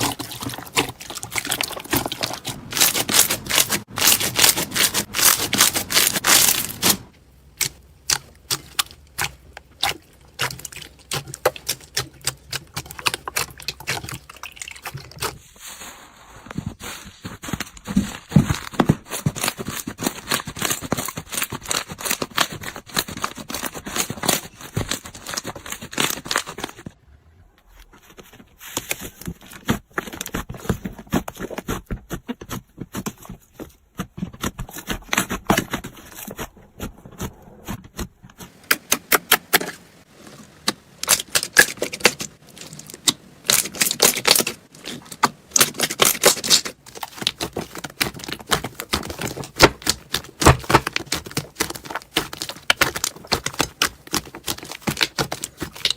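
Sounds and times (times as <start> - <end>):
slime crackling and popping: 0.0 - 15.4, 40.6 - 55.9.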